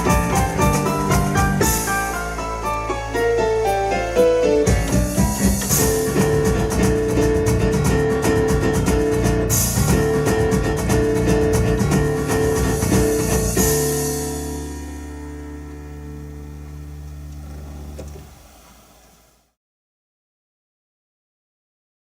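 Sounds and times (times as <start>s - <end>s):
driving drum rhythm: 0.0s - 2.4s, 4.6s - 14.7s.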